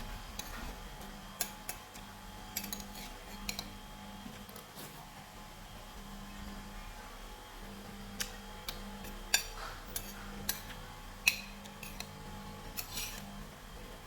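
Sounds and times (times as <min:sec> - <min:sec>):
utensils clinking on tableware: 0:02.5 - 0:03.7, 0:09.0 - 0:12.1.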